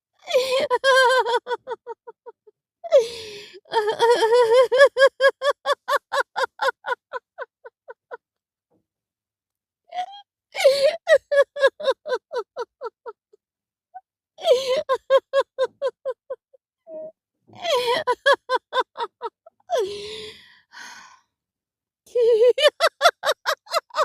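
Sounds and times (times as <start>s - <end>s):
person laughing: 3.8s - 8.2s, 10.6s - 13.2s, 17.6s - 20.2s, 22.1s - 24.0s.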